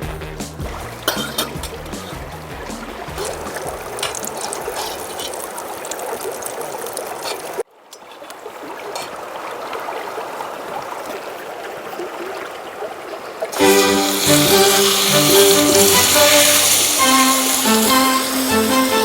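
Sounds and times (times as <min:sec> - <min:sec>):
meat sizzling: 0:13.6 - 0:19.0
fire crackling pops: 0:14.2 - 0:18.3.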